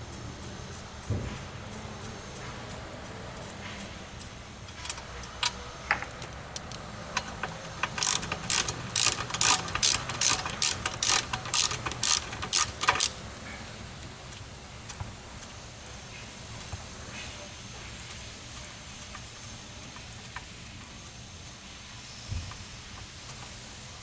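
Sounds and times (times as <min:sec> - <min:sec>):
ratchet wrench clicking: 0:04.7 - 0:13.3
tools and parts knocking: 0:04.7 - 0:13.3.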